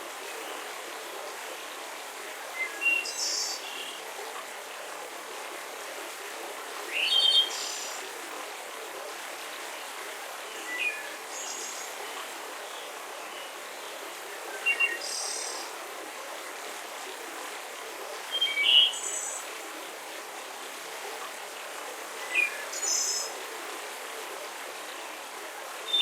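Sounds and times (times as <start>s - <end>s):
forest ambience hiss: 0.0s - 26.0s.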